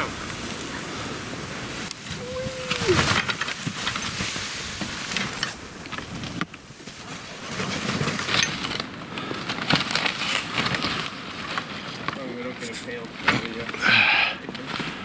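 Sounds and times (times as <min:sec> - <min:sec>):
small clicks and scrapes: 0:02.8 - 0:13.8.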